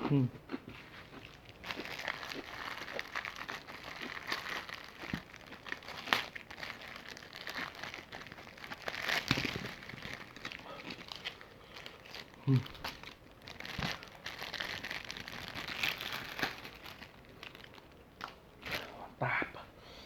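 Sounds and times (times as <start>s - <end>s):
crunchy chewing of fried chicken: 0.0s - 19.0s.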